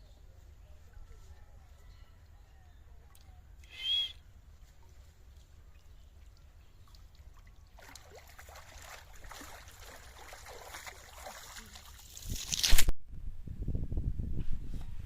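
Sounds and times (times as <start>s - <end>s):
water trickling and splashing: 4.4s - 12.8s.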